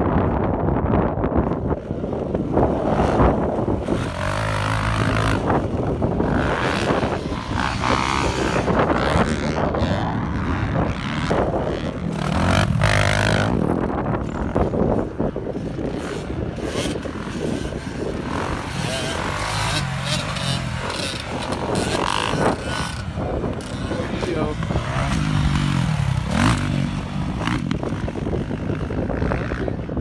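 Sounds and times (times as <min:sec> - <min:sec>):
dirt bike engines revving: 0:00.1 - 0:30.0.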